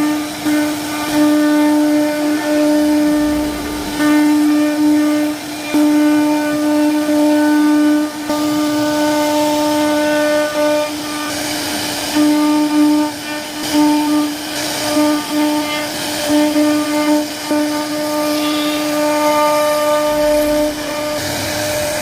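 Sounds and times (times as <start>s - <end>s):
hiss of wood cutting: 0.0s - 22.0s
router spindle whining: 2.3s - 5.2s, 19.7s - 22.0s.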